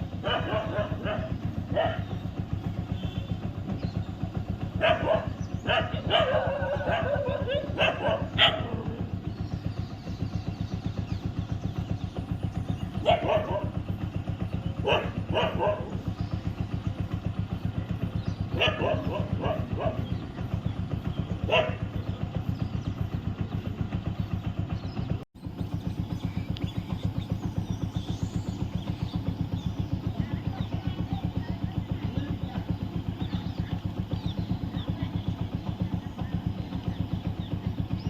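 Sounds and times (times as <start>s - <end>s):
dogs barking: 0.0s - 2.4s, 4.6s - 9.2s, 12.8s - 16.2s, 18.4s - 20.6s, 21.3s - 22.2s
engine idling: 0.0s - 38.0s.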